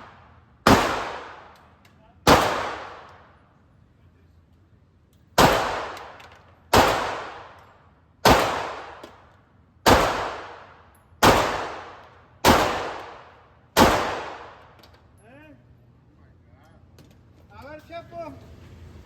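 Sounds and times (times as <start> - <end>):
handgun shots echoing indoors: 5.4 - 14.9.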